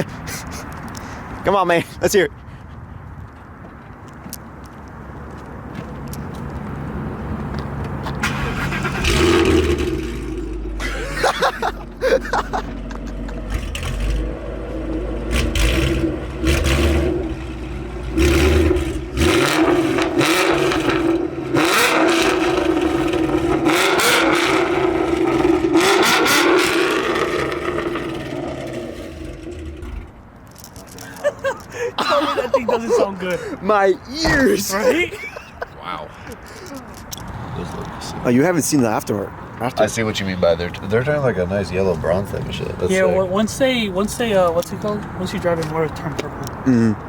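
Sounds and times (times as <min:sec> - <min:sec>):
car engine revving loudly: 0:08.2 - 0:10.8, 0:13.5 - 0:30.0.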